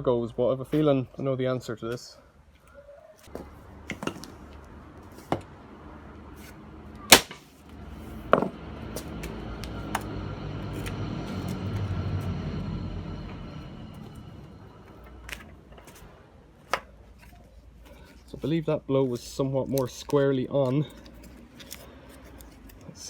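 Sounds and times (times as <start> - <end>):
sledgehammer striking steel lock: 7.1 - 7.4
low rushing noise: 8.6 - 15.7.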